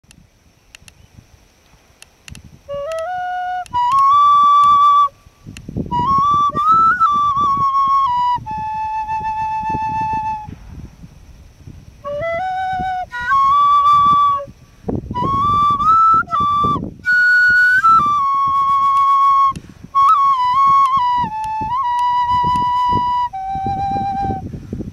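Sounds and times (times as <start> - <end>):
flute melody: 2.7 - 5.2, 5.8 - 10.6, 12.0 - 24.5
low rumbling noise: 3.8 - 24.9.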